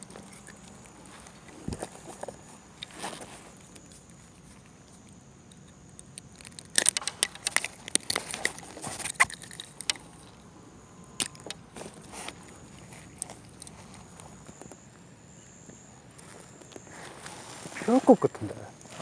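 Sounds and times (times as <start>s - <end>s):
sharp clicks and knocks: 5.5s - 10.3s.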